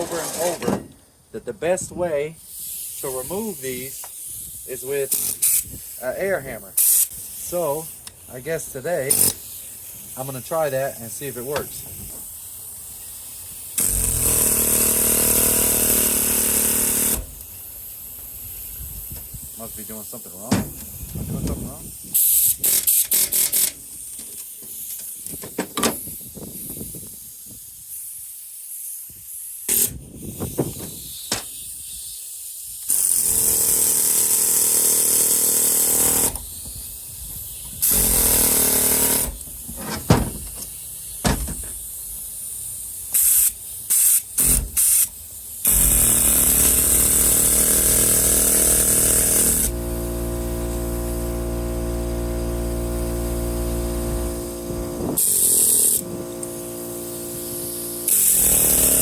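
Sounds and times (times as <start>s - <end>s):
pneumatic air hammer firing: 0.0s - 1.1s, 2.4s - 6.0s, 6.8s - 8.3s, 9.0s - 10.3s, 11.4s - 19.6s, 20.4s - 59.0s
air hiss: 2.1s - 50.0s, 53.1s - 59.0s
steady hum: 49.7s - 58.1s.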